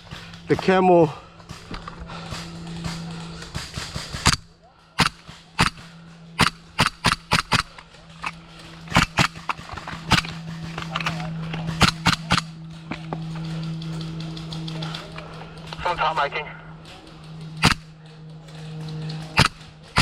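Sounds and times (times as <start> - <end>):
steady low hum: 0.0 - 20.0
airsoft gun shots: 2.8 - 7.7, 11.7 - 12.5, 17.6 - 17.9, 19.4 - 20.0.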